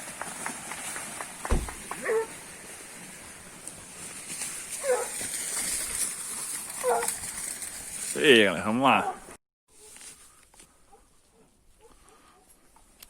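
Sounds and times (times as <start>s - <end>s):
dogs barking: 2.0s - 2.4s, 4.8s - 5.2s, 6.8s - 7.2s, 9.0s - 9.3s.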